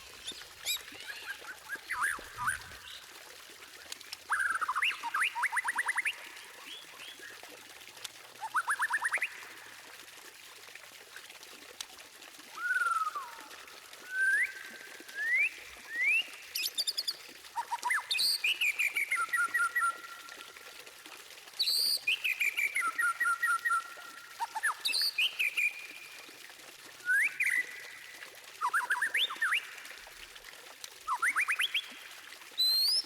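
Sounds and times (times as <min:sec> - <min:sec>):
bird singing whistled notes: 0:27.0 - 0:27.7.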